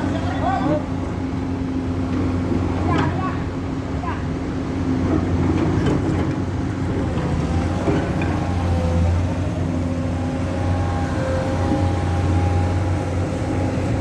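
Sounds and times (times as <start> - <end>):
heavy diesel engine humming: 0.0 - 14.0.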